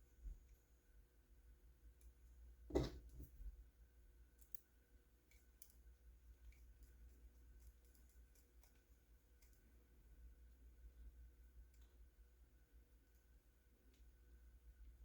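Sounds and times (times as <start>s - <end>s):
faint steady hum: 0.0s - 15.0s
small parts and tools clicking: 4.4s - 4.7s, 5.3s - 9.7s.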